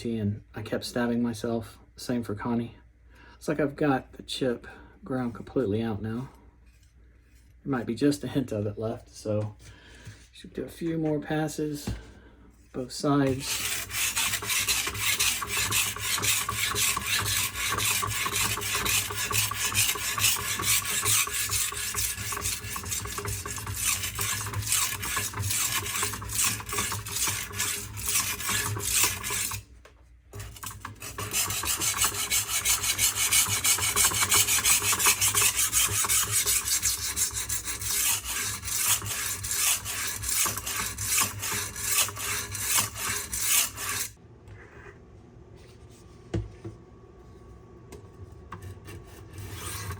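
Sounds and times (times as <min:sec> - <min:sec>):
knife grinding on sharpening stone: 0:13.4 - 0:29.6, 0:30.3 - 0:44.1.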